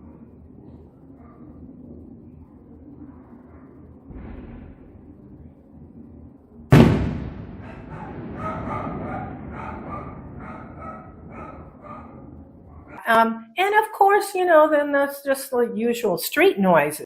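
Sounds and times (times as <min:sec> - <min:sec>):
loud firework bang: 0:04.1 - 0:05.1, 0:06.7 - 0:09.9
dogs barking: 0:07.6 - 0:13.0.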